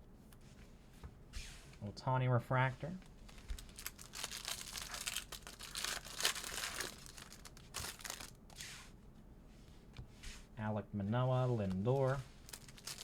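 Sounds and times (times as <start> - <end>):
wrapper crinkling and tearing: 3.0 - 8.6, 12.0 - 13.0.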